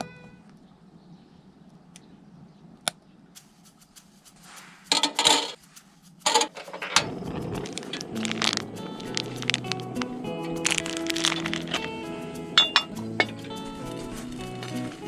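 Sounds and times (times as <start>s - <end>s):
steady hiss: 3.4s - 15.0s
cookware clattering: 4.9s - 5.6s, 6.3s - 7.2s, 12.6s - 13.7s
metal cookware clicks: 4.9s - 5.6s, 6.3s - 7.2s, 12.6s - 13.6s.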